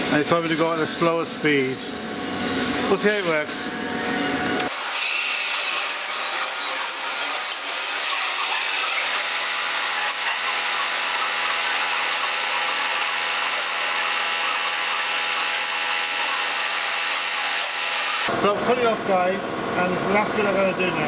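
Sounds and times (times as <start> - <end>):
lathe parting tool cutting: 4.6 - 18.4.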